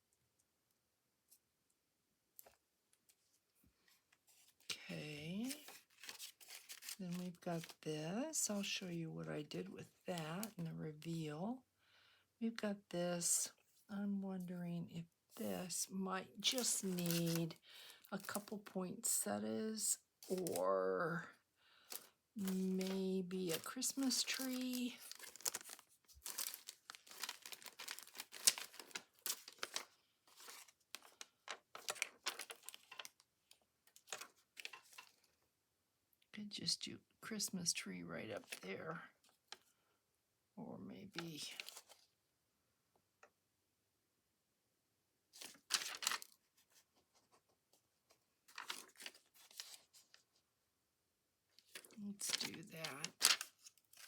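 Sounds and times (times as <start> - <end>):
paper crinkling and rustling: 2.4 - 8.9, 15.4 - 20.6, 21.9 - 35.3, 41.4 - 42.1, 45.4 - 50.4, 51.6 - 54.0.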